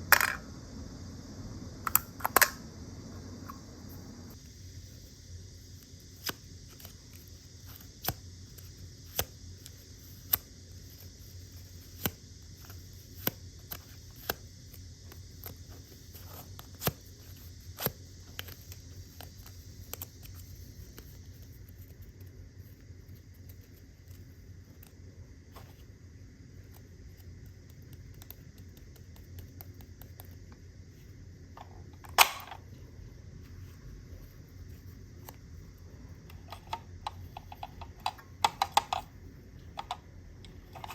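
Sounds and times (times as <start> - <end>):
steady low hum: 0.0 - 40.9
plastic toy pieces clicking: 37.4 - 39.1.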